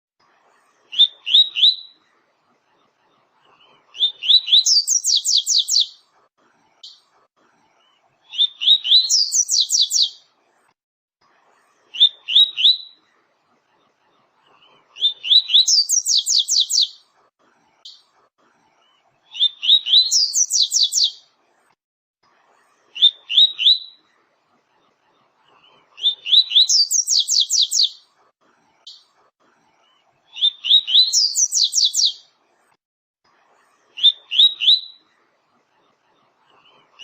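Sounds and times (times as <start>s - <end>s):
bird singing whistled phrases: 8.4s - 10.2s, 15.0s - 17.0s, 19.4s - 21.2s, 26.1s - 28.0s, 30.4s - 32.2s.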